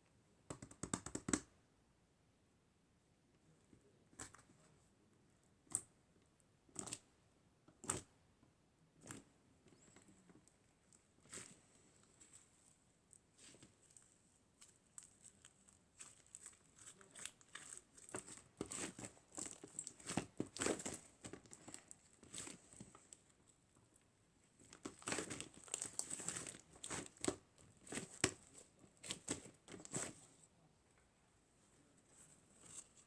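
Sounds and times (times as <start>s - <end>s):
crinkling and rustling material: 9.0s - 33.0s.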